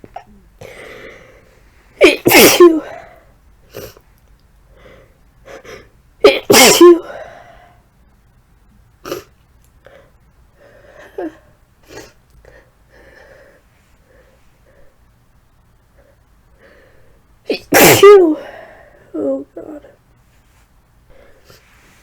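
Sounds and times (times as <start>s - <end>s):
woman sneezing: 2.0s - 3.2s, 6.2s - 7.1s, 17.5s - 18.6s.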